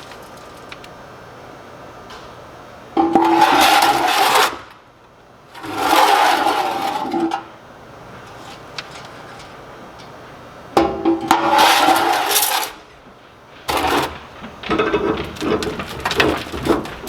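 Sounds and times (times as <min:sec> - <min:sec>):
metal scraping inside stove: 0:03.0 - 0:04.8, 0:05.5 - 0:13.0, 0:13.6 - 0:17.0.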